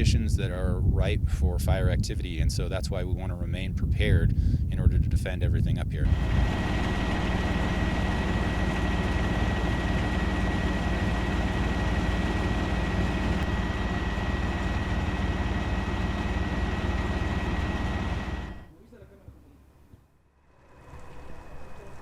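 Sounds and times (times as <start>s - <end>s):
heavy engine droning: 6.0s - 18.7s, 20.4s - 22.0s
thin high whine: 6.0s - 18.7s.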